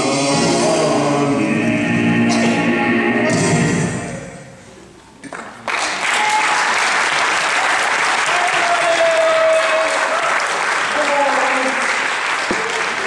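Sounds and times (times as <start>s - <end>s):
song music: 0.0s - 4.9s
congregation applauding: 5.3s - 13.0s.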